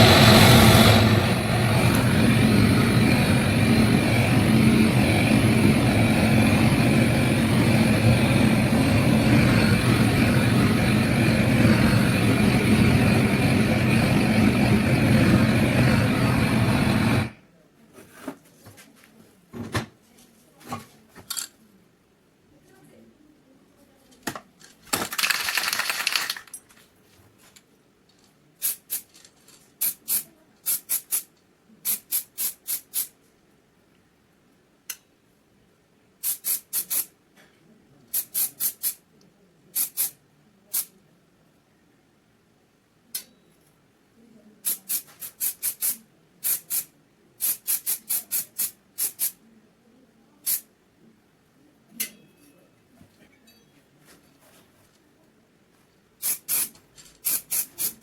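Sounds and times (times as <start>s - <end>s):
hissing spray burst: 36.2s - 37.1s, 44.6s - 49.4s, 56.2s - 58.0s.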